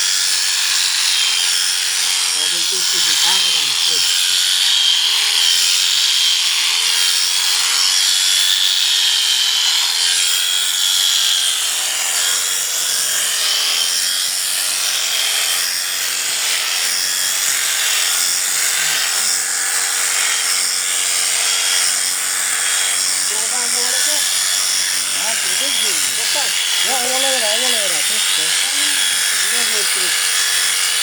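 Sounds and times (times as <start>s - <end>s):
electric shears motor hum: 0.0s - 31.0s.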